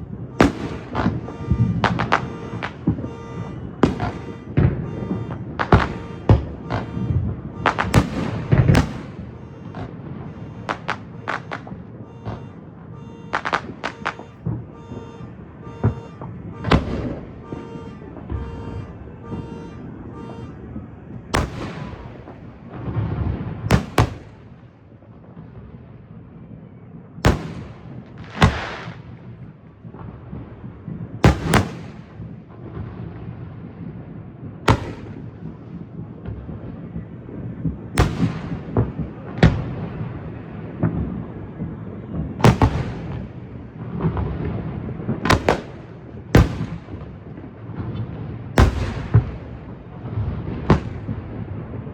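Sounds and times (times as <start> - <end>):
crackling hiss of fireworks: 0.0 - 20.6, 21.4 - 51.9
firework shells booming: 0.0 - 24.7, 27.2 - 33.4, 34.7 - 51.9
pulsing beep: 0.8 - 8.4, 9.2 - 20.6.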